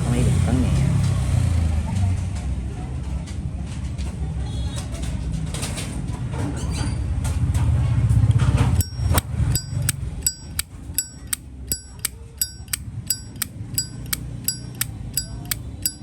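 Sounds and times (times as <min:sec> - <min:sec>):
lighter lid clicking open and shut: 0:08.8 - 0:16.0.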